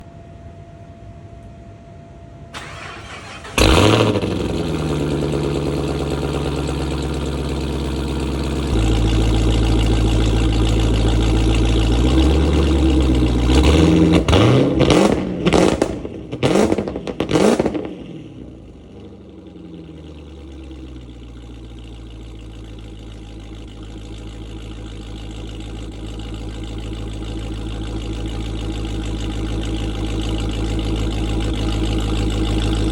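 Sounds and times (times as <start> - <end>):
car engine idling: 2.5 - 32.9
exhaust crackling pops: 2.6 - 18.0
engine revving: 2.6 - 21.0, 23.4 - 32.9.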